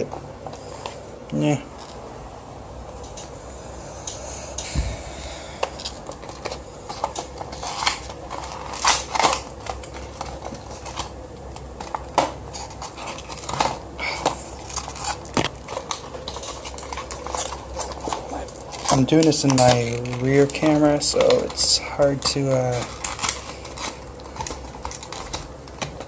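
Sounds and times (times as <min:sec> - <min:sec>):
packaging crinkling and clicking: 0:05.6 - 0:26.0.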